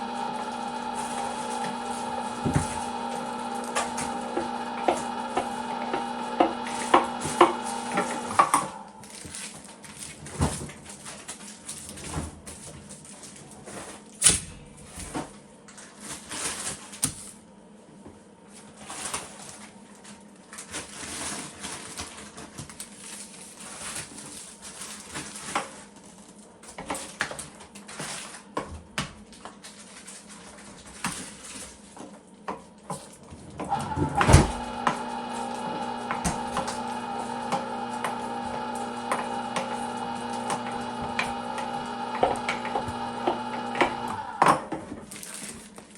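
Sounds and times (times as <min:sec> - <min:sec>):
electric meat grinder running: 0:00.0 - 0:09.3, 0:33.6 - 0:44.8.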